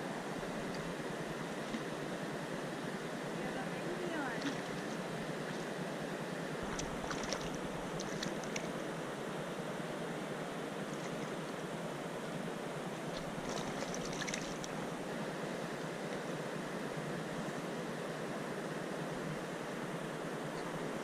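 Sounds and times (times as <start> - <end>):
river water rushing: 0.0 - 9.4, 13.0 - 15.6.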